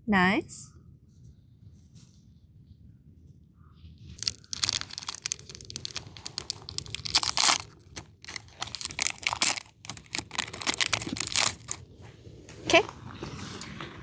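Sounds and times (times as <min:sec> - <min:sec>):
foil wrapper tearing and crinkling: 0:04.2 - 0:11.8.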